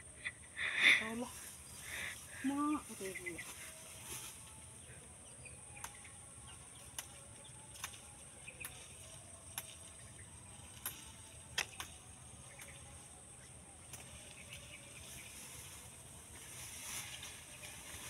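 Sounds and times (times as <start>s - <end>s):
high-pitched insect chorus: 0.0s - 18.0s
sharp clicks or snaps: 10.8s - 12.8s.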